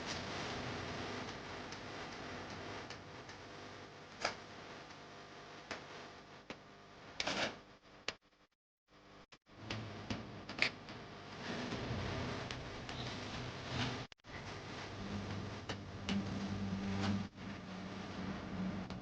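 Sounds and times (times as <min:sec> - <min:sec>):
steady low hum: 0:09.0 - 0:19.0.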